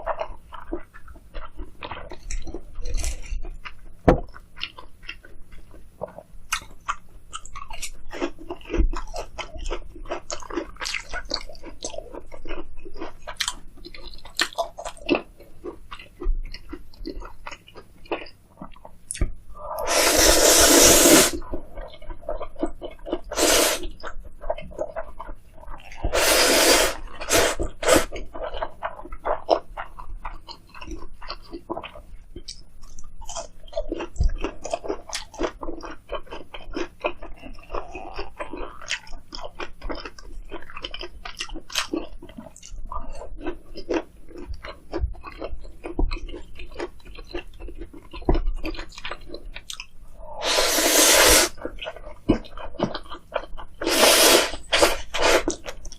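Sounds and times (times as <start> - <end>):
chewing food with crunches: 0.0 - 55.9
wet mouth clicks: 53.8 - 55.9.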